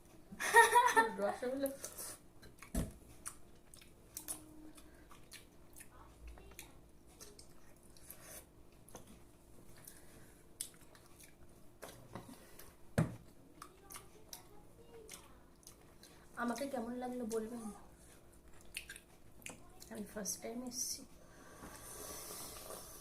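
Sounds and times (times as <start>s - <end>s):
wet chewing and lip-smacking: 2.4s - 10.0s, 10.6s - 12.0s, 13.6s - 16.7s, 18.4s - 19.9s.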